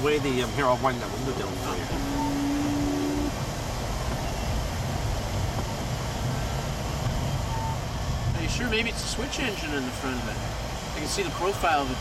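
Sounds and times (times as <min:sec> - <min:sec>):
steady hum: 0:00.0 - 0:07.9
car idling rumble and hiss: 0:00.0 - 0:12.0.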